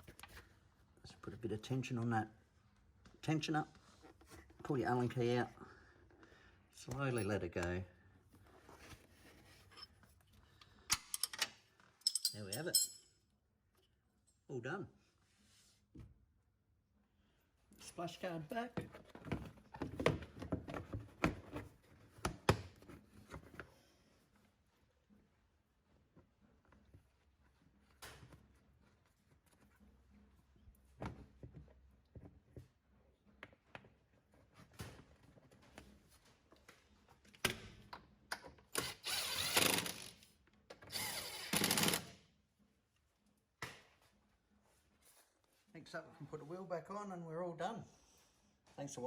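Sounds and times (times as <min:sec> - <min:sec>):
power tool driving bolts: 0:38.7 - 0:40.2, 0:40.8 - 0:42.2.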